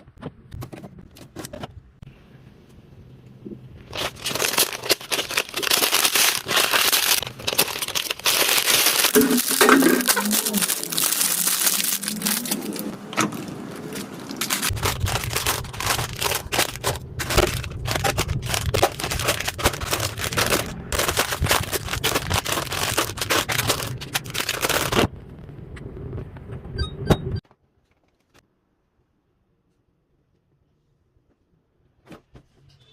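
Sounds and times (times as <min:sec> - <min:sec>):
low hum: 0:02.0 - 0:26.9
plastic packaging being handled: 0:03.8 - 0:25.1.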